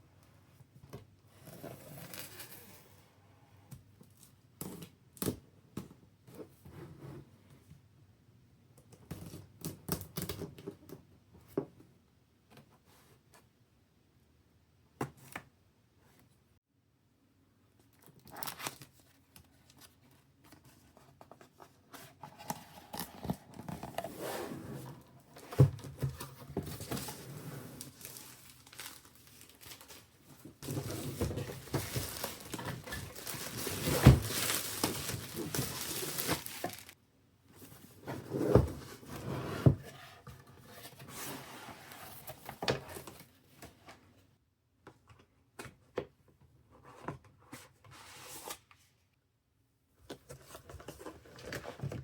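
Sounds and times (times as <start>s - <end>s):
plastic packaging crinkling and tearing: 18.0s - 19.1s, 27.8s - 37.0s.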